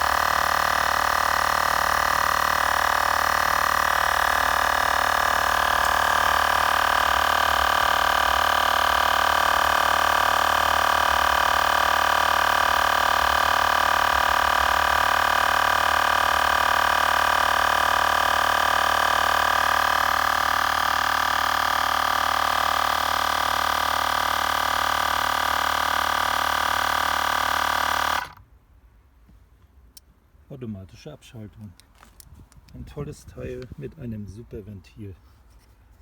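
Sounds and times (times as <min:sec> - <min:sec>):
air compressor humming: 0:00.0 - 0:28.4.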